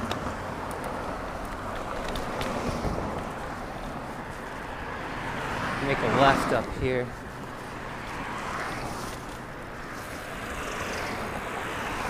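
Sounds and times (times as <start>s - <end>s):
wind noise: 0.0s - 7.4s
bicycle road noise: 0.0s - 12.0s.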